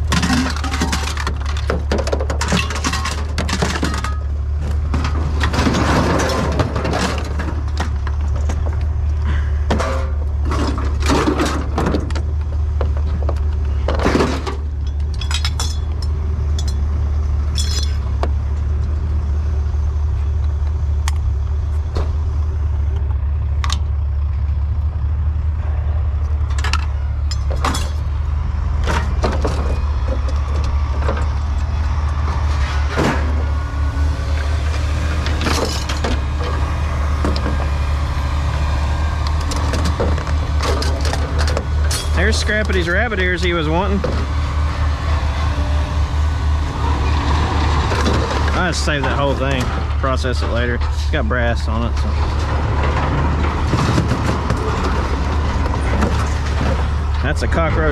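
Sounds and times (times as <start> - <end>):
scrap metal clanking: 0.0 - 8.7, 9.3 - 12.3, 12.9 - 16.8, 34.4 - 38.6, 39.3 - 44.4, 47.0 - 57.9
vehicle engine rumbling: 0.0 - 57.9.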